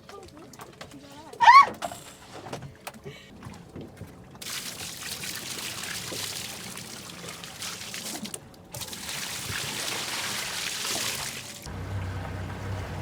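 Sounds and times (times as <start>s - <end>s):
water pouring and splashing: 3.3s - 11.7s.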